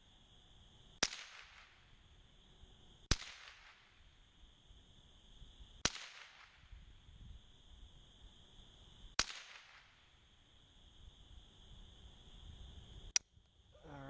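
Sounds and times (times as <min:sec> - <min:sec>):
rifle shots: 0:05.8 - 0:06.6, 0:09.2 - 0:09.8.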